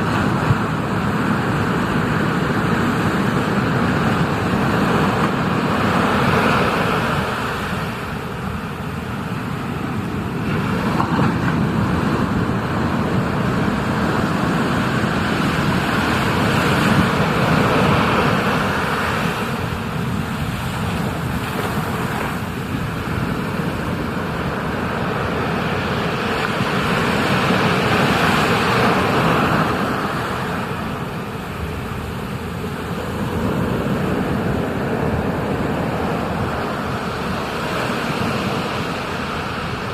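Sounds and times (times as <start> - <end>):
ocean surf rushing: 0.0 - 39.9.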